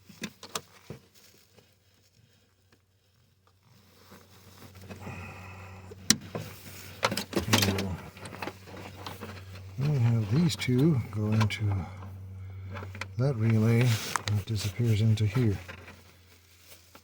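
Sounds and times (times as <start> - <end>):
hand tools clicking and rattling: 6.0 - 14.4.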